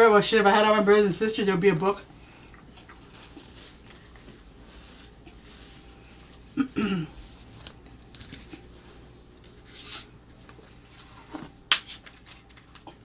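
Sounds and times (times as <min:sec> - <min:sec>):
food rustling and crackling: 0:02.1 - 0:06.6, 0:07.2 - 0:13.0.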